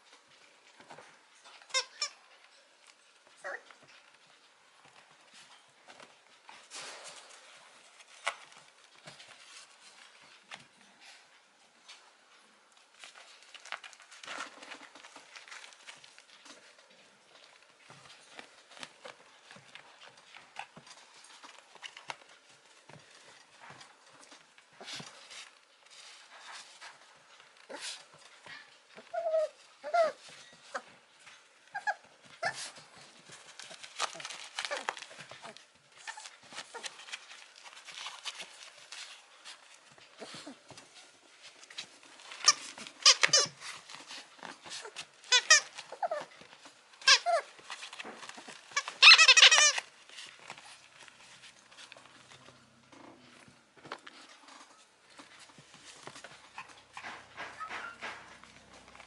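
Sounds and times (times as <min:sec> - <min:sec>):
puppy whining: 0:03.2 - 0:04.3, 0:27.5 - 0:39.0, 0:42.2 - 0:49.9, 0:56.1 - 0:59.0.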